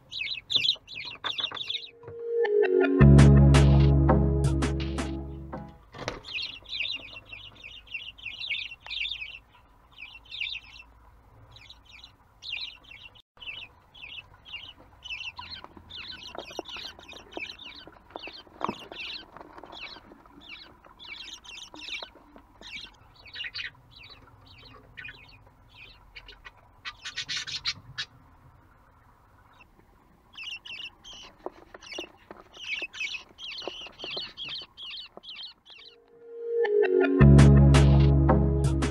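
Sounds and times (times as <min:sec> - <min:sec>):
budgerigars chirping and chattering: 0:00.0 - 0:02.0, 0:06.0 - 0:28.2, 0:29.4 - 0:36.0.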